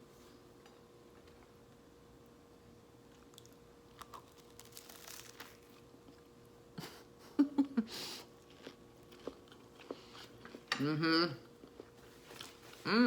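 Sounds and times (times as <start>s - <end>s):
chewing with faint crunch: 8.4s - 10.8s.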